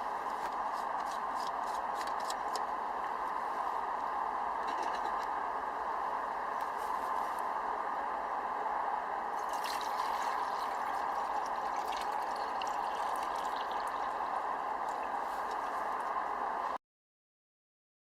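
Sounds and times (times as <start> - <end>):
water rushing and hissing: 5.3 - 16.8.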